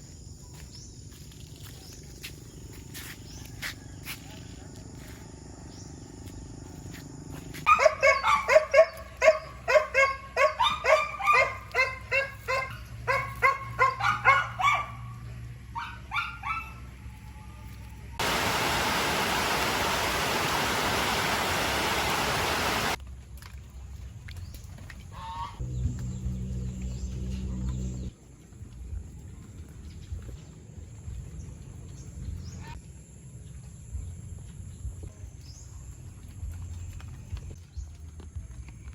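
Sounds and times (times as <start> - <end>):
steady hiss: 18.2 - 23.0.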